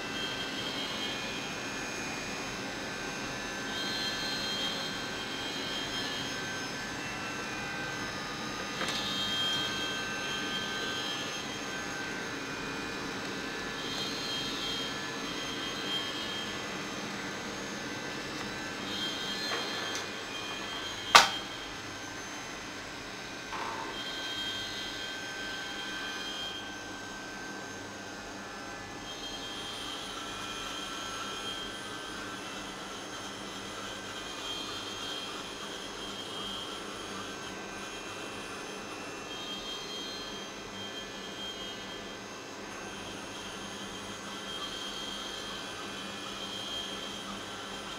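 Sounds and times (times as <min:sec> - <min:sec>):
milling machine humming and whining: 0:00.0 - 0:47.9
sharp click: 0:21.1 - 0:21.4.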